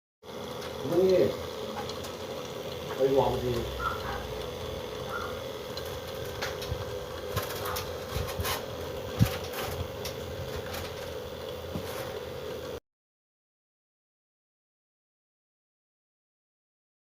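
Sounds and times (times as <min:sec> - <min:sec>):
air conditioner humming: 0:00.3 - 0:12.8.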